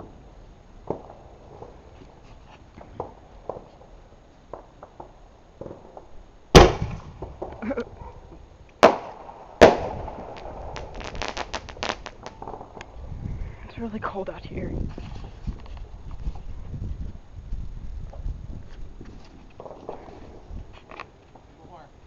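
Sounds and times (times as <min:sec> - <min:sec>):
fireworks crackling pops: 0:00.8 - 0:21.9
fireworks bangs: 0:02.8 - 0:08.2, 0:08.8 - 0:13.0, 0:19.6 - 0:20.7.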